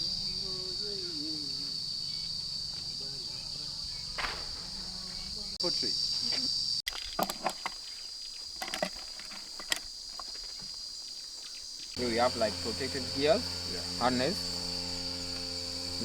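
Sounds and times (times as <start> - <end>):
insects buzzing trill: 0.0 - 16.0.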